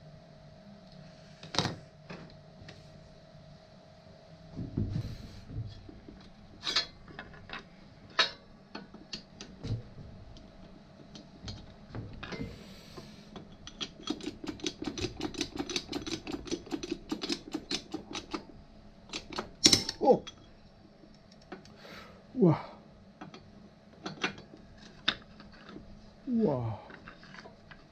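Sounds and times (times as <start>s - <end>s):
sharp clicks and knocks: 13.4s - 20.4s.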